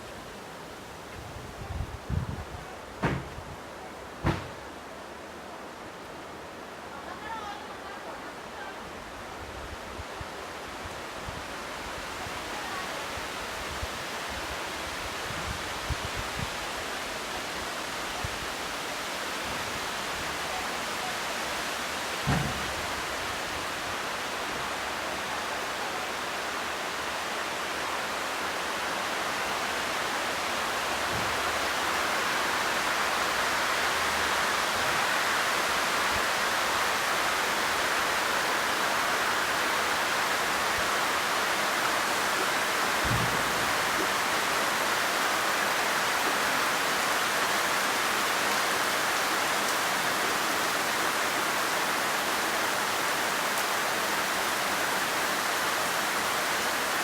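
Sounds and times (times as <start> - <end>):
heavy rain falling: 0.0 - 57.0
faint low thuds: 3.0 - 3.6, 4.2 - 4.7, 22.2 - 23.0, 43.0 - 43.8.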